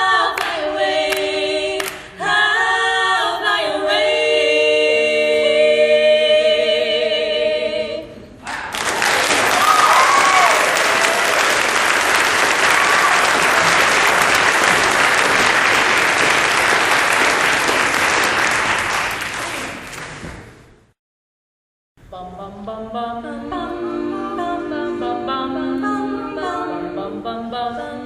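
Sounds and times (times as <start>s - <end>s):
barbershop quartet singing chord: 0.0s - 8.3s, 22.2s - 28.0s
audience applause: 8.5s - 20.2s.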